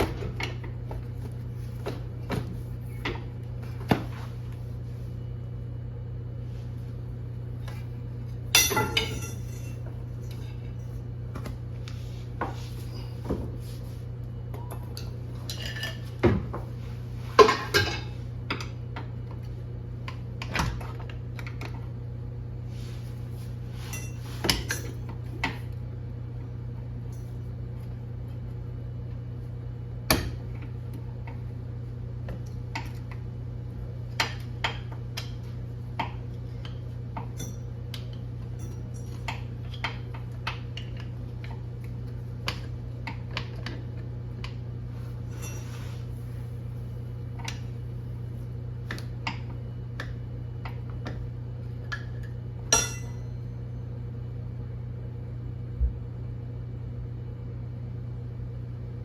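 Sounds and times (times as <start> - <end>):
steady low hum: 0.0 - 59.0
metal tools clinking and clanking: 8.6 - 10.8, 45.3 - 46.0.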